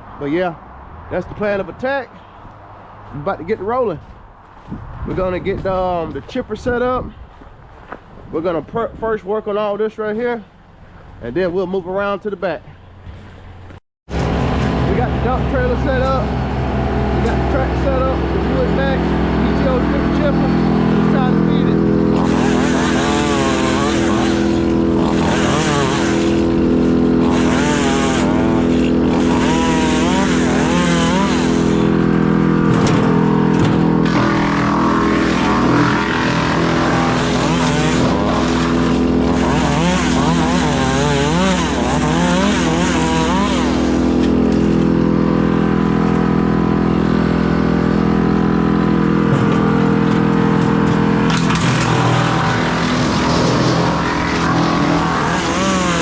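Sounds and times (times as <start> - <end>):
wood chipper drone: 13.0 - 56.0.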